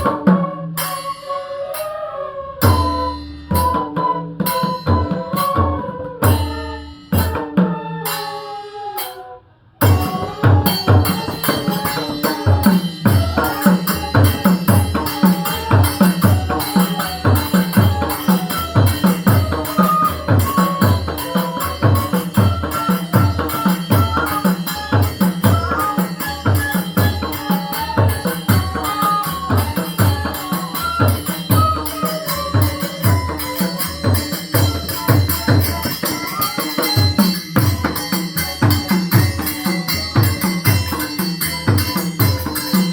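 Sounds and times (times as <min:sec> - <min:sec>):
flute melody: 0:00.0 - 0:42.9
drum playing fast rhythm: 0:09.8 - 0:42.9.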